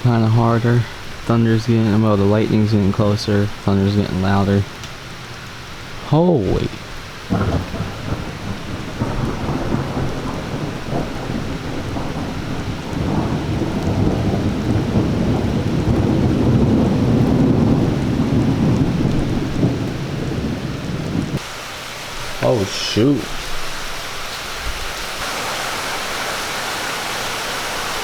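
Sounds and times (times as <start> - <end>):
rolling thunder: 0.0 - 21.4
heavy rain: 0.0 - 28.0.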